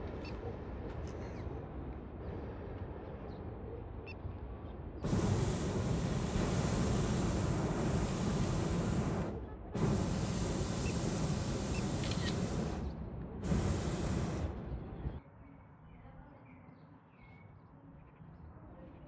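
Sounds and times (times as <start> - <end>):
hot-air balloon burner firing: 5.0 - 15.2.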